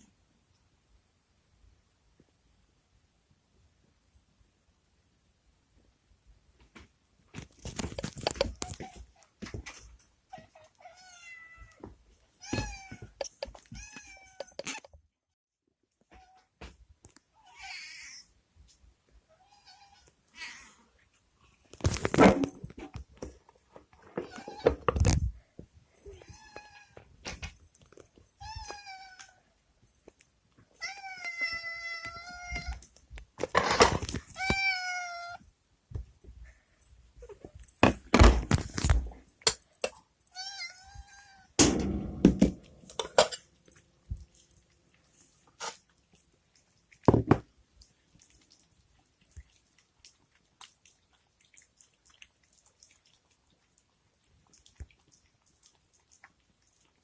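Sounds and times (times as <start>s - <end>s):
sharp clicks and rustles: 6.8s - 10.1s
cat meowing: 10.3s - 11.8s, 30.8s - 32.8s, 34.3s - 35.4s
cats meowing: 10.3s - 14.8s, 24.2s - 24.9s, 26.0s - 27.1s, 28.3s - 29.5s, 30.7s - 32.9s, 34.2s - 35.5s, 40.3s - 41.6s.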